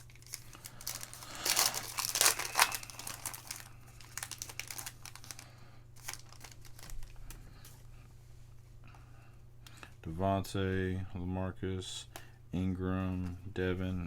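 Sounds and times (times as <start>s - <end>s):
cards being shuffled: 0.0s - 5.4s
card pack wrapper crinkling: 0.0s - 7.7s.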